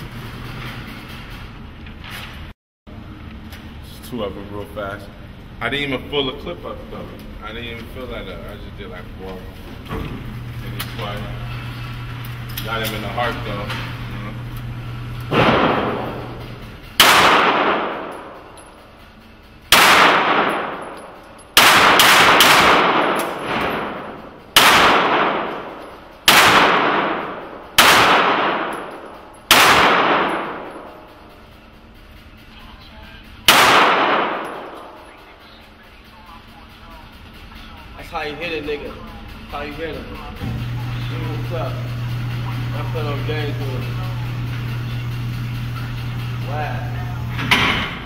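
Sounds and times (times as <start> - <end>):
handgun shots echoing indoors: 15.3 - 18.9, 19.7 - 31.4, 33.4 - 35.4.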